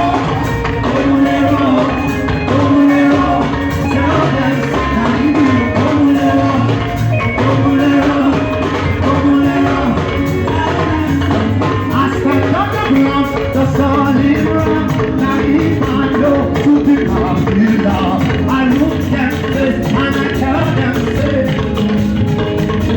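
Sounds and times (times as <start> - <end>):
drums and percussion: 0.0 - 22.9
live band dance music: 0.0 - 22.9.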